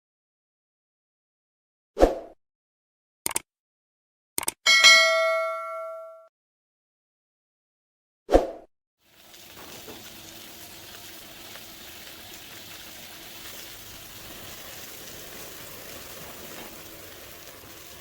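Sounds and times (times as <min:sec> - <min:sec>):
oil sizzling in a wok: 0:09.0 - 0:18.0
faint crackles: 0:09.1 - 0:18.0.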